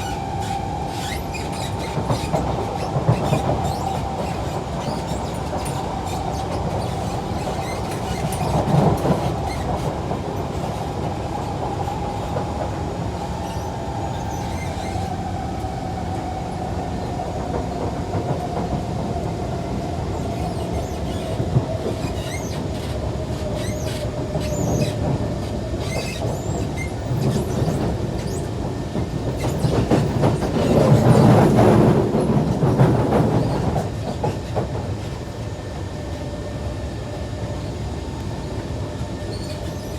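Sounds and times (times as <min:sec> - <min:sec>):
train wheels rumbling on track: 0:00.0 - 0:39.9
rail clicks: 0:20.2 - 0:35.9.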